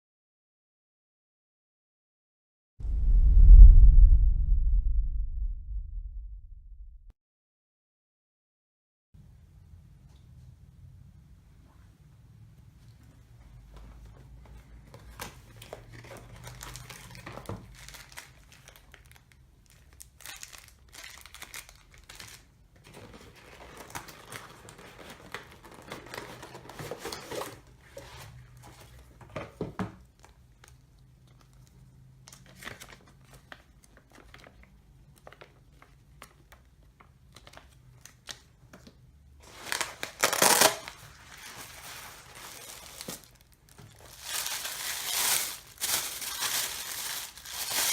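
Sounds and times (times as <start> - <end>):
packaging rustling and crinkling: 15.0 - 29.5, 31.4 - 47.9.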